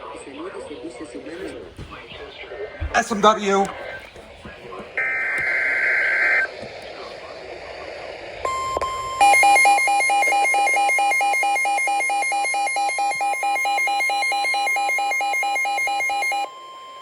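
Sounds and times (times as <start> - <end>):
steady warning alarm tone: 4.9 - 6.5, 8.4 - 17.0
two-pitch electronic alarm: 5.0 - 6.5, 8.5 - 17.0.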